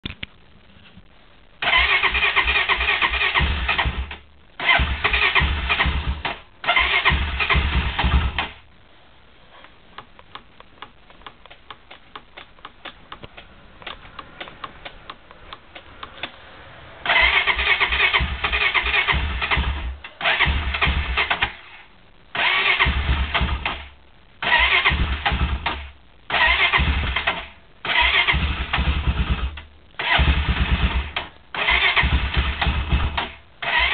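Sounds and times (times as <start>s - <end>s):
engine cranking without starting: 1.6s - 8.6s, 17.0s - 21.6s, 22.4s - 33.9s
faint ticking: 9.6s - 16.4s.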